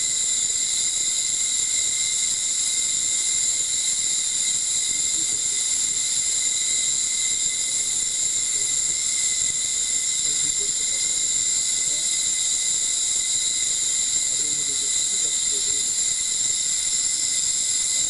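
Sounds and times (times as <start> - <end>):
thin steady whining tones: 0.0 - 18.0
ultrasonic unit high hiss: 0.0 - 18.0.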